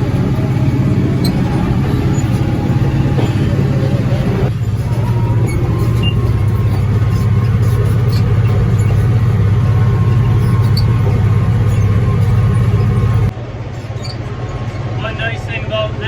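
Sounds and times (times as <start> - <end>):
baler machinery noise: 0.0 - 16.0
tractor engine hum: 0.0 - 16.0.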